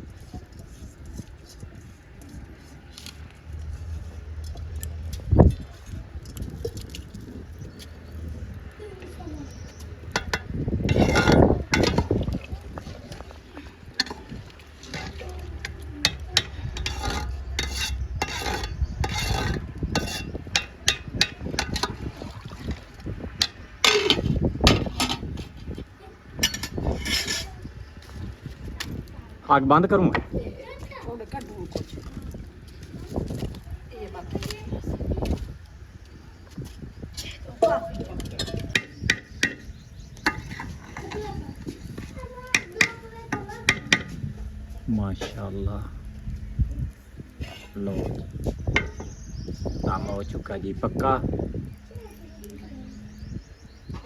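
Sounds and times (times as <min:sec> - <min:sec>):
metal spoon scraping rice in pot: 0:09.5 - 0:22.8, 0:23.4 - 0:25.8, 0:26.4 - 0:29.1, 0:37.2 - 0:43.0, 0:47.4 - 0:49.2
spoon knocking against pot: 0:10.1 - 0:12.2
low rumble: 0:44.0 - 0:50.0.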